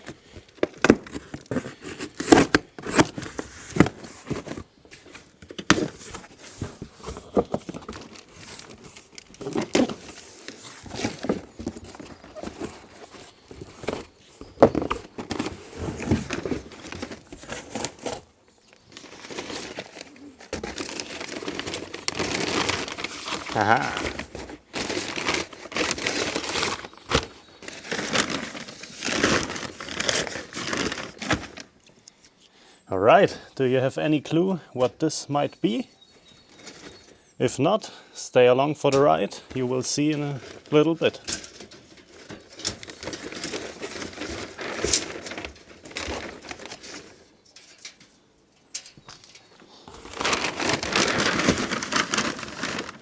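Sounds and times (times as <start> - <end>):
packing material crumpling: 15.3 - 31.9, 39.3 - 48.0, 49.8 - 53.0.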